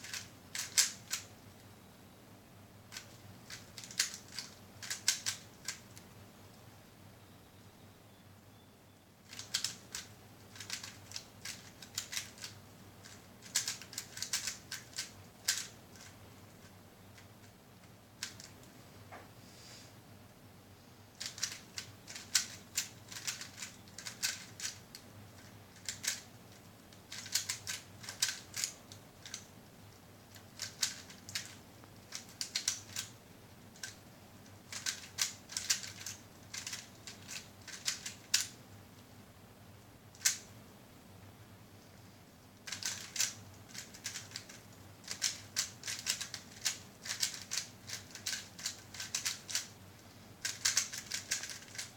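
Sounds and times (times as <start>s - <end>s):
plastic puzzle cube clicking: 0.0s - 1.3s, 2.9s - 6.1s, 9.3s - 16.2s, 18.2s - 18.6s, 21.2s - 26.3s, 26.9s - 29.5s, 30.3s - 33.2s, 34.7s - 38.6s, 40.1s - 40.5s, 42.6s - 49.8s, 50.4s - 51.9s.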